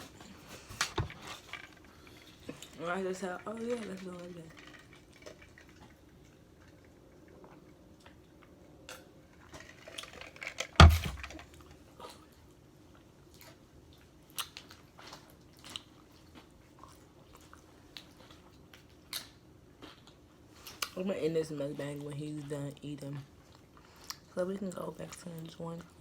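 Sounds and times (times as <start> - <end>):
chewing crunchy chips: 1.2 - 21.0, 21.8 - 26.0
loud thump: 10.8 - 11.4.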